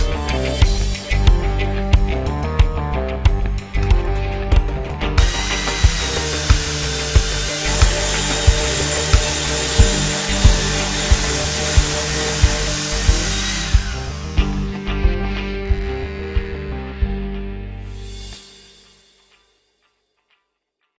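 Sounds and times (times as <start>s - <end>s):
background music with beat: 0.0s - 19.5s
orbital sander running: 5.2s - 18.4s.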